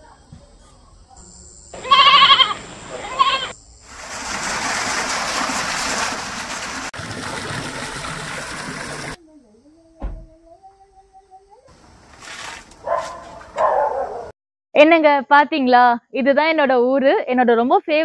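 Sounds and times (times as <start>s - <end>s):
farm animal bleating: 1.8s - 3.5s.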